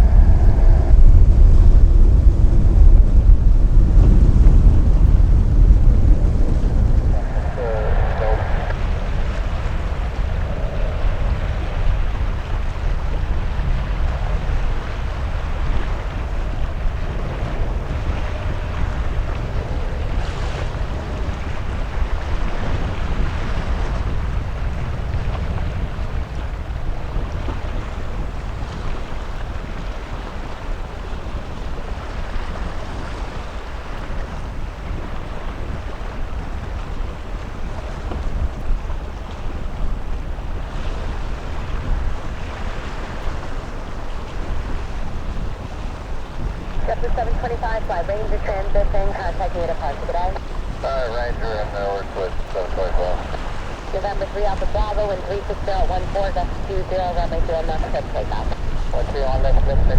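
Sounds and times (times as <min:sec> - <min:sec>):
jet engines rumbling: 0:00.0 - 0:23.8, 0:43.4 - 0:59.9
wind buffeting microphone: 0:00.0 - 0:59.9.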